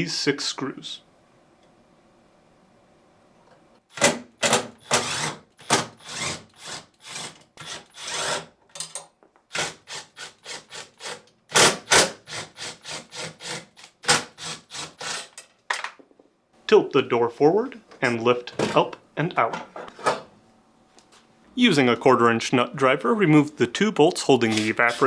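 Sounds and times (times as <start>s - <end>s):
nut driver scraping screws: 3.9s - 8.9s, 9.5s - 15.4s, 24.4s - 25.0s.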